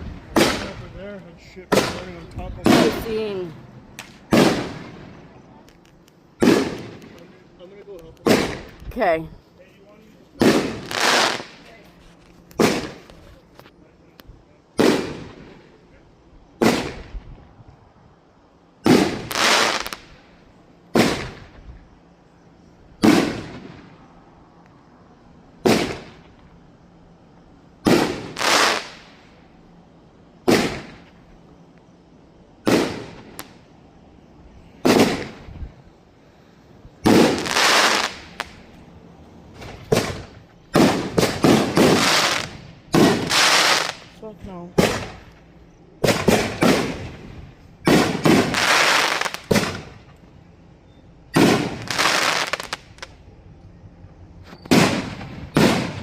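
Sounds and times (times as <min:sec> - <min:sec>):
firework bangs: 0:00.0 - 0:05.5, 0:06.4 - 0:08.9, 0:10.4 - 0:11.8, 0:12.6 - 0:13.2, 0:14.8 - 0:15.8, 0:16.6 - 0:17.4, 0:18.8 - 0:21.7, 0:23.0 - 0:24.0, 0:25.6 - 0:26.5, 0:27.8 - 0:29.4, 0:30.4 - 0:31.2, 0:32.6 - 0:33.7, 0:34.8 - 0:35.8, 0:37.0 - 0:38.7, 0:39.5 - 0:45.4, 0:46.0 - 0:50.1, 0:51.3 - 0:53.2, 0:54.6 - 0:56.0.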